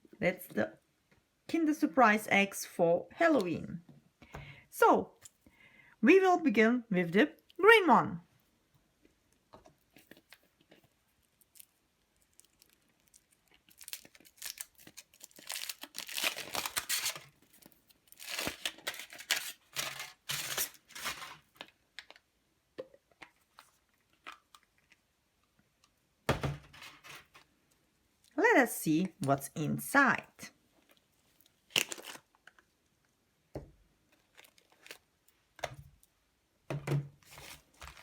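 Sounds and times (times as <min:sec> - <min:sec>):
foil wrapper tearing and crinkling: 0:11.3 - 0:22.2, 0:31.7 - 0:32.6, 0:34.1 - 0:35.1.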